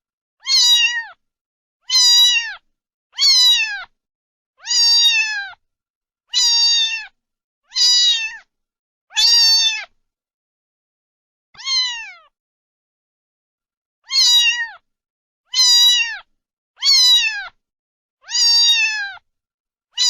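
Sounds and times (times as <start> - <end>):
cat meowing: 0.4 - 1.2, 1.8 - 4.0, 4.6 - 5.6, 6.3 - 8.5, 9.1 - 10.0, 11.6 - 12.4, 14.0 - 14.8, 15.5 - 17.6, 18.2 - 19.2.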